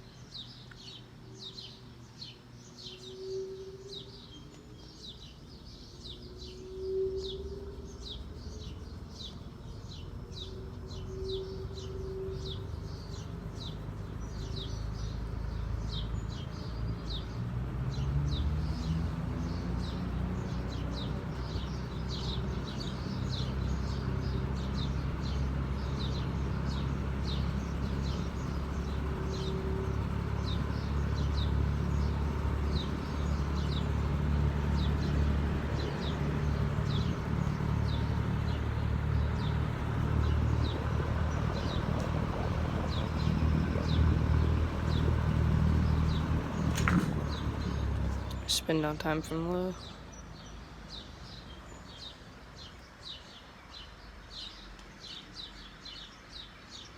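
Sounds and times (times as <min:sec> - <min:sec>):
birds chirping: 0:00.0 - 0:56.9.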